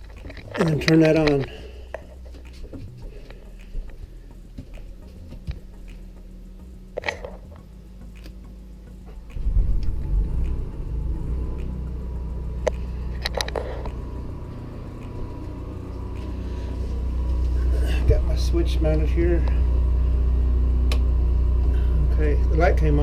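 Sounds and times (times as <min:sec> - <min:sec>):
sharp clicks and knocks: 0:00.0 - 0:06.1, 0:12.6 - 0:14.1
generator running rumble: 0:00.0 - 0:23.0.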